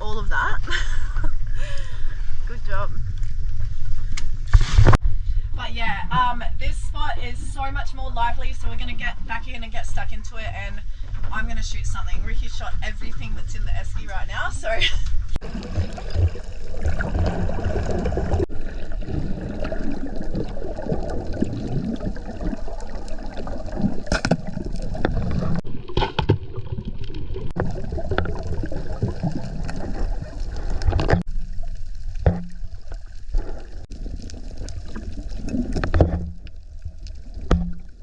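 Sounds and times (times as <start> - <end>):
water gurgling and sloshing: 0.0 - 5.4, 6.2 - 38.0.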